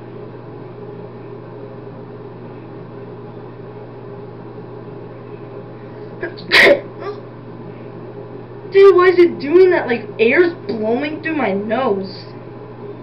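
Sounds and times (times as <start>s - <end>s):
man sneezing: 6.2s - 7.2s.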